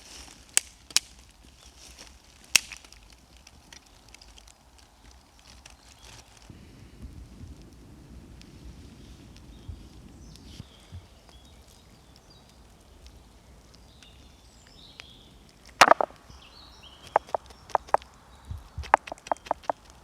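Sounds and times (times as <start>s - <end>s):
small birds chirping: 0.0s - 6.6s, 8.6s - 20.0s
chopping strikes on wood: 15.8s - 16.2s, 18.8s - 19.8s.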